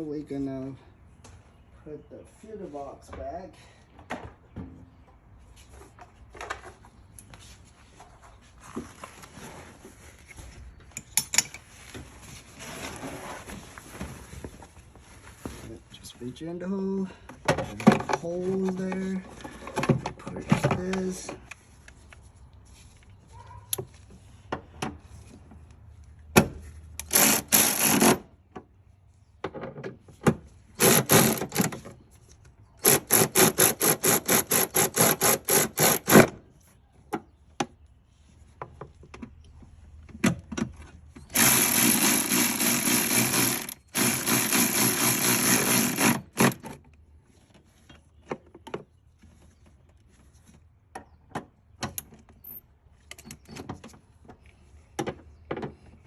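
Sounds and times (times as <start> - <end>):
power tool rapid ticking: 30.8 - 31.6, 32.8 - 36.2, 41.3 - 46.6.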